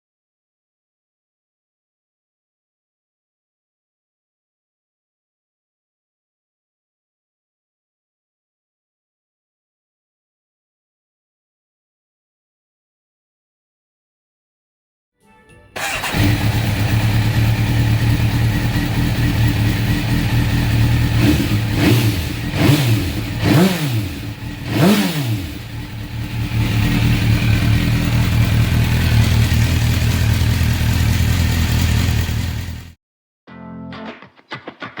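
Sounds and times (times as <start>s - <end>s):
motorcycle engine idling and revving: 15.8s - 33.0s.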